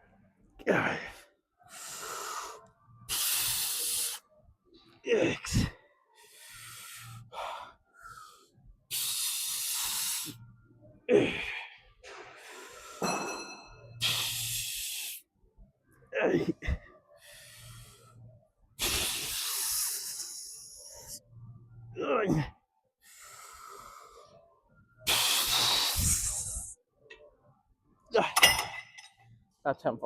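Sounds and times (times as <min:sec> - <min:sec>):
man grunting: 0:00.6 - 0:01.2, 0:05.0 - 0:05.7, 0:16.2 - 0:16.8, 0:22.0 - 0:22.5
man exhaling forcefully: 0:25.1 - 0:26.7.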